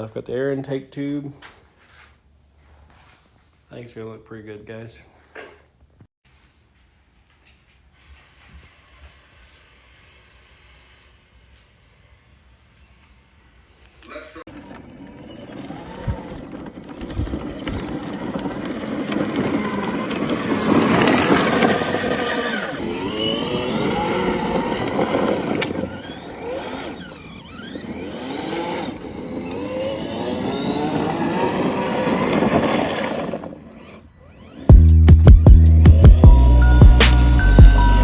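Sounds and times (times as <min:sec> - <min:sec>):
car engine revving: 0:15.3 - 0:38.0.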